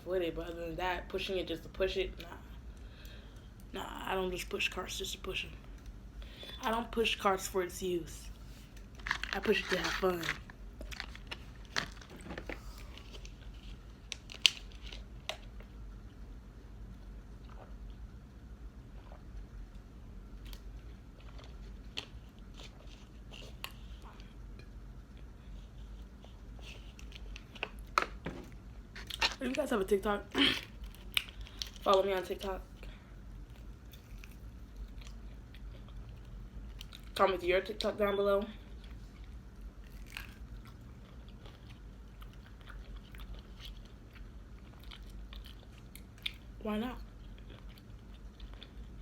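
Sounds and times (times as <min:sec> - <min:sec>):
low steady hum: 0:00.0 - 0:49.0
person chewing fast food: 0:08.6 - 0:15.8, 0:20.3 - 0:29.4, 0:30.5 - 0:31.9, 0:33.2 - 0:37.1, 0:38.6 - 0:49.0
crisp crunches: 0:08.7 - 0:15.4, 0:39.8 - 0:43.8
chewing and biting food: 0:33.4 - 0:37.2, 0:38.7 - 0:49.0.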